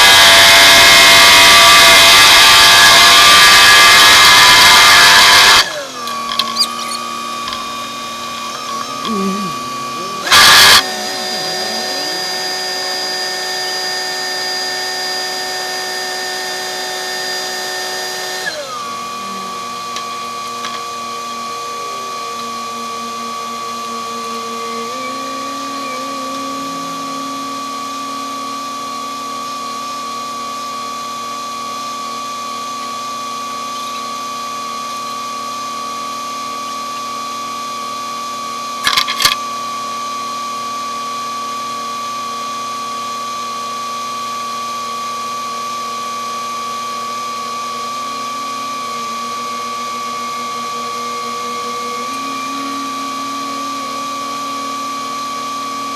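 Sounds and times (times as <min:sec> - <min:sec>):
paving machine engine whining: 0:00.0 - 0:30.9, 0:46.5 - 0:55.9.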